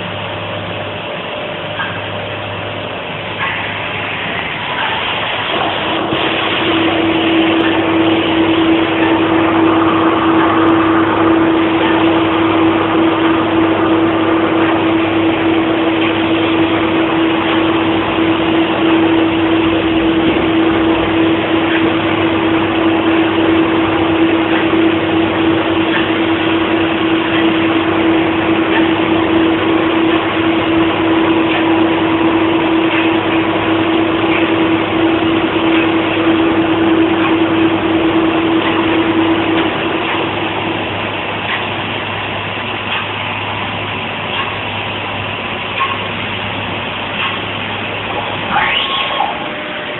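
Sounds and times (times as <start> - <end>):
milling machine spindle whine: 0.0 - 49.9.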